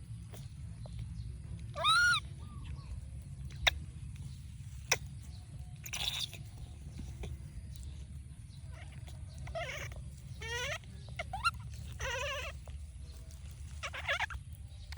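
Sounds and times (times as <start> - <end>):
steady low hum: 0.0 - 14.9
baby monkey high-pitched cries: 1.6 - 7.9, 8.5 - 14.9.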